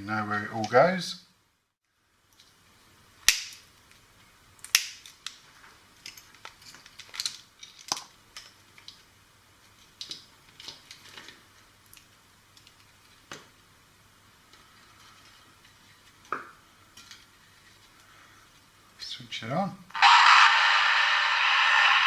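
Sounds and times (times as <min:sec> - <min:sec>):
clicks of small plastic parts: 0:06.0 - 0:09.0.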